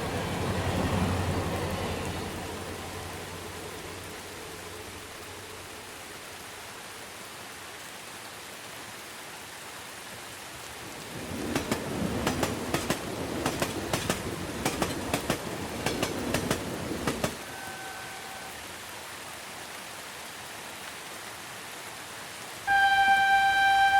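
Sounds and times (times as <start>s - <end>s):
train passing with wheel clacks: 0.0s - 5.0s, 11.0s - 18.1s
steady rain hiss: 0.0s - 23.9s.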